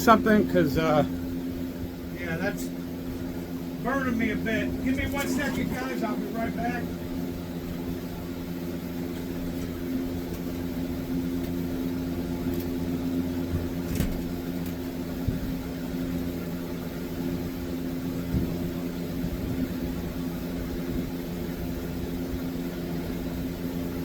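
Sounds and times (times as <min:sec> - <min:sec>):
machine hum with low rumble: 0:00.0 - 0:24.0.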